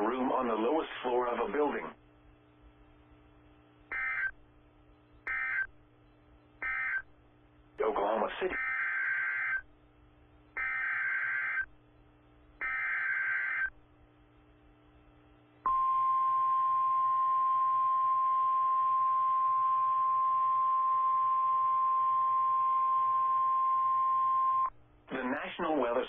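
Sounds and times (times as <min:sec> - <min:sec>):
steady attention tone: 0:15.6 - 0:24.8.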